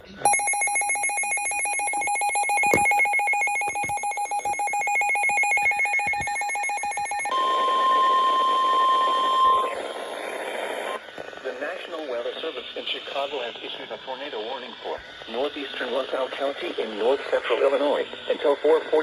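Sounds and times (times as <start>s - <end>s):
pulsing electronic alarm beep: 0.2s - 11.0s
steady alarm tone: 0.2s - 11.0s.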